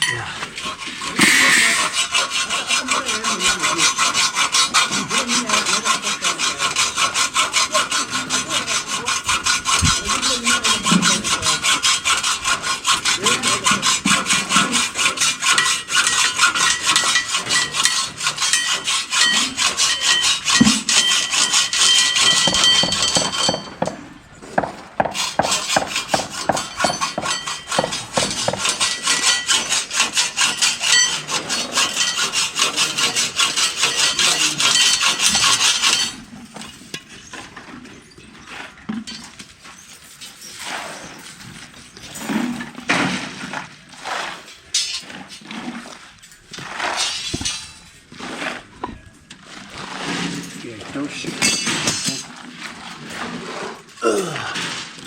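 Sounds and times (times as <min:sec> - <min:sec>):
hacksaw cutting through metal: 0:00.0 - 0:48.8, 0:49.4 - 0:55.0.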